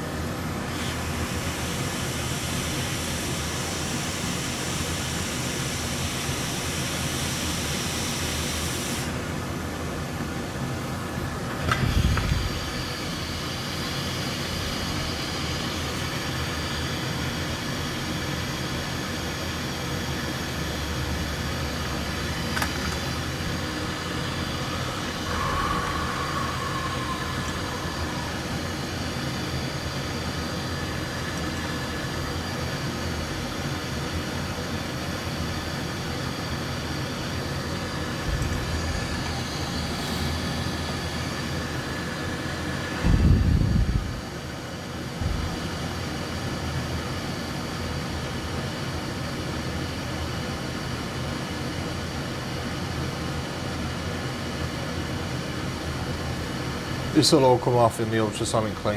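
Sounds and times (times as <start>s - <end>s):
fan blowing: 8.3s - 46.9s, 55.6s - 58.9s.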